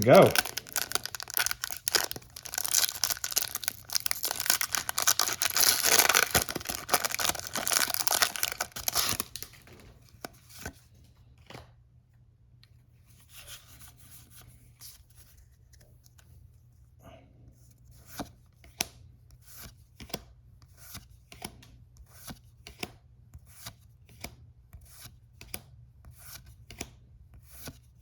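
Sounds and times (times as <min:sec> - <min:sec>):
foil wrapper tearing and crinkling: 0:00.0 - 0:09.7.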